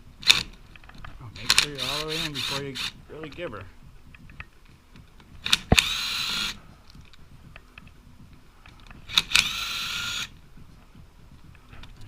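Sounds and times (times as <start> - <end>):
impact driver knock and whir: 5.4 - 6.6, 8.8 - 10.4.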